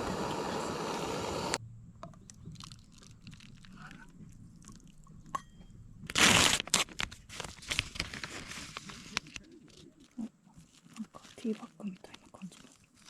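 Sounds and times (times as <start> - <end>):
packet ripping open: 6.1 - 10.1
wrapper crinkling: 6.1 - 13.0.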